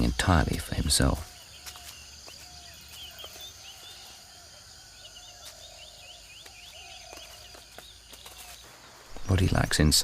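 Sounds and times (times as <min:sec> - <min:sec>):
high insect hum: 0:00.0 - 0:10.0
small birds chirping: 0:00.0 - 0:10.0.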